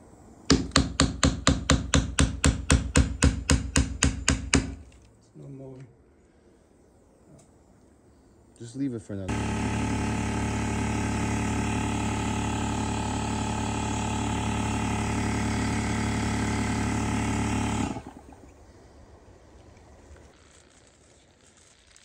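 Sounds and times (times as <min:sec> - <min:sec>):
machine humming: 0:09.3 - 0:18.6.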